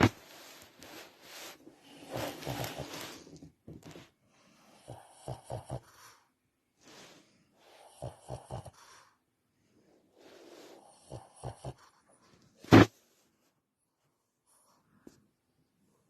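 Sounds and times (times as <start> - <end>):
dog breathing noisily: 0.0 - 3.4, 4.3 - 9.4.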